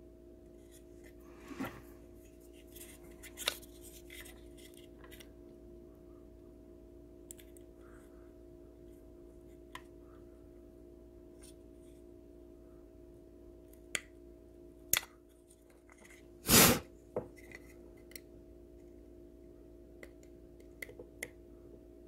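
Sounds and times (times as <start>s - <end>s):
low electrical hum: 0.0s - 22.0s
short rasping scrape: 16.5s - 16.8s.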